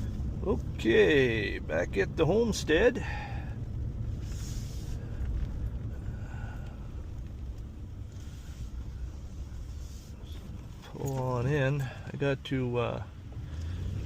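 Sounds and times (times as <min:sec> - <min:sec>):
truck engine and road rumble: 0:00.0 - 0:14.0
brief hiss: 0:04.2 - 0:05.2.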